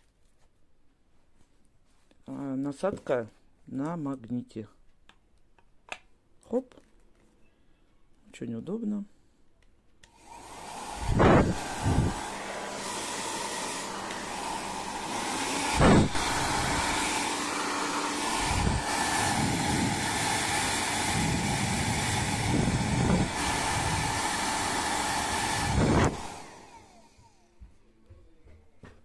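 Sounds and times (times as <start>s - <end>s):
hair dryer blowing air: 10.1s - 27.6s.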